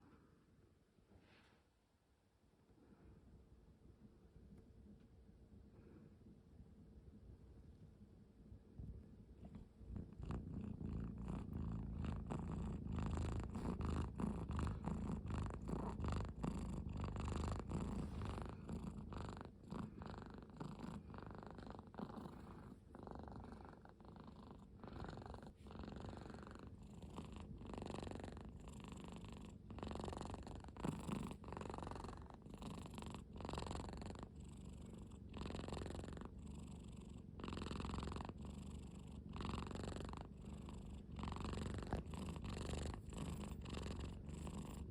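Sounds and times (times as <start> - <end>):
cat purring: 9.1 - 44.9.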